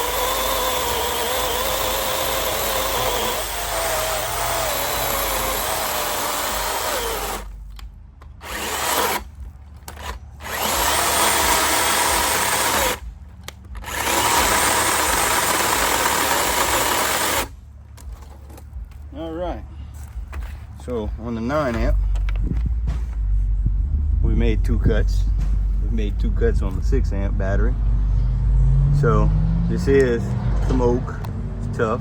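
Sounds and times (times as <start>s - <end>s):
chainsaw cutting wood: 0.0s - 7.6s, 8.4s - 13.1s, 13.8s - 17.6s.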